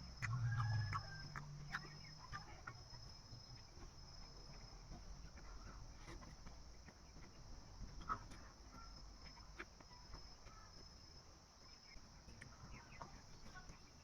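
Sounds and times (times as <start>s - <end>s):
insect trill: 0.0s - 5.4s.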